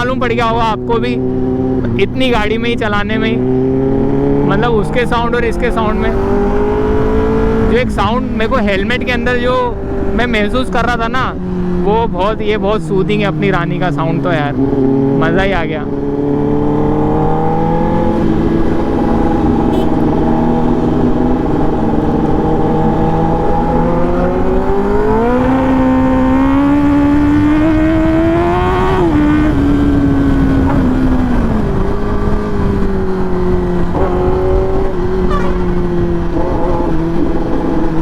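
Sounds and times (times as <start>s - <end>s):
motorcycle engine: 0.0s - 38.0s
wind noise: 0.0s - 38.0s.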